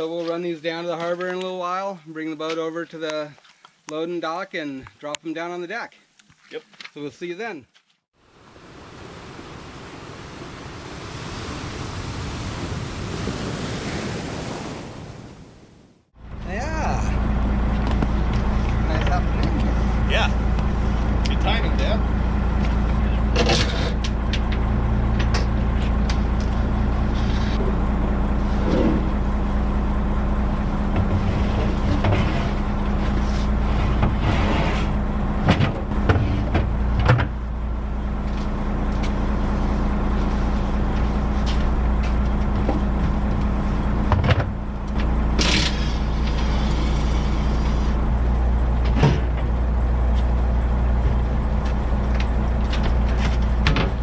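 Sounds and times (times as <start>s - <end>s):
truck engine running: 16.2s - 54.0s
metal knocks and clanks: 51.0s - 54.0s.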